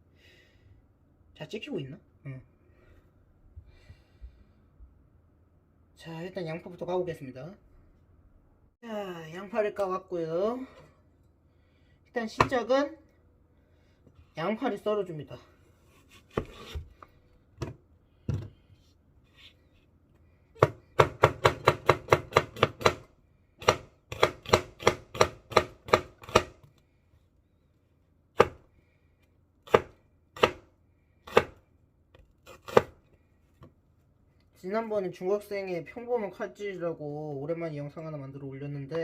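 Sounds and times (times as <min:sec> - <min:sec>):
knife slicing onion on board: 0:15.9 - 0:17.0, 0:20.6 - 0:23.0, 0:23.6 - 0:26.7, 0:28.4 - 0:28.7, 0:29.7 - 0:31.6, 0:32.4 - 0:33.1.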